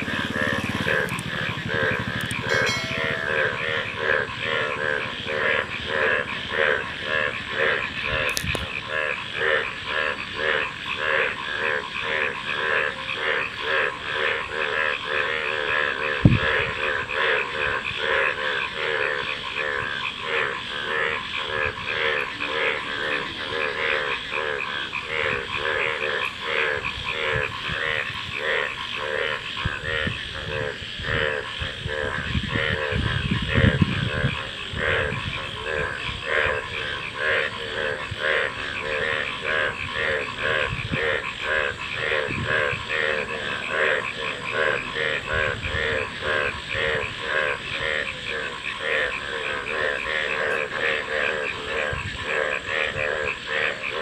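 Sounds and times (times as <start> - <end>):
frogs croaking in chorus: 0.0 - 54.0.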